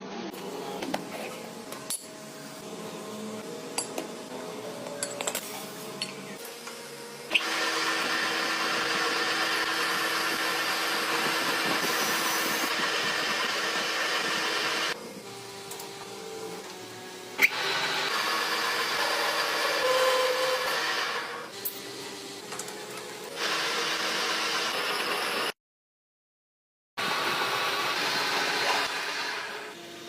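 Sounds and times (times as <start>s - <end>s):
metal tools clinking: 5.0s - 6.2s
power tool motor running: 7.3s - 16.1s, 17.4s - 22.5s, 23.3s - 25.6s.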